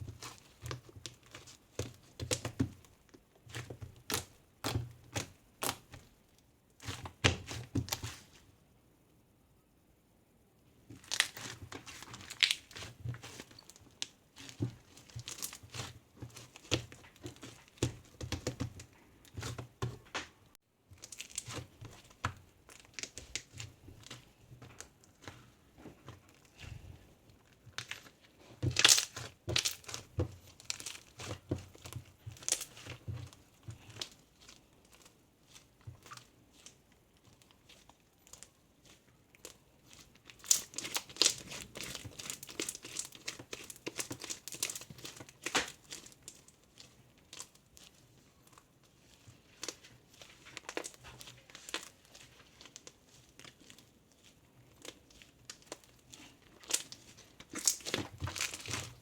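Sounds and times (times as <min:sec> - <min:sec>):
paper or plastic crinkling: 0:27.8 - 0:59.0.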